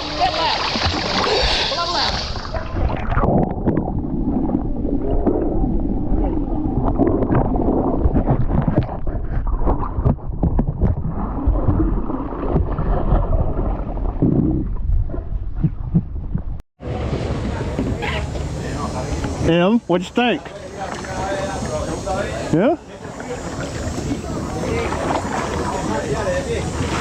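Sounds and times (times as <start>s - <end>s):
muffled water gurgling: 0.0s - 19.5s.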